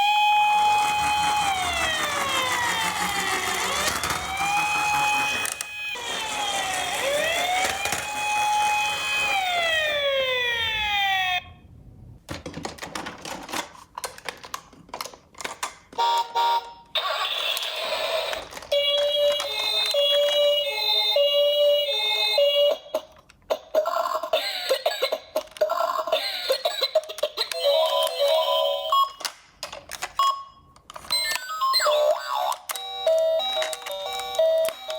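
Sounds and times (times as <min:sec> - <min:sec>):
toy electronic sirens: 0:00.0 - 0:11.6, 0:16.0 - 0:23.0, 0:30.2 - 0:34.9
toy cars clicking and clattering: 0:00.1 - 0:10.0, 0:12.4 - 0:16.0, 0:17.0 - 0:20.7, 0:22.8 - 0:30.2, 0:30.8 - 0:34.9.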